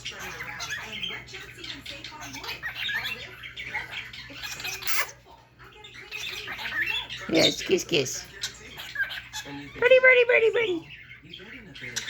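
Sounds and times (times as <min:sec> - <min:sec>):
cockatiel chattering and chirping: 0:00.0 - 0:12.0.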